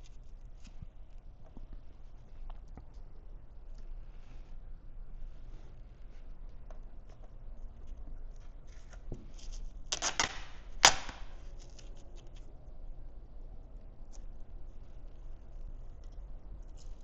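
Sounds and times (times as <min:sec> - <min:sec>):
vinyl film crinkling: 0:06.1 - 0:12.5
vinyl film sharp snap: 0:09.9 - 0:11.4.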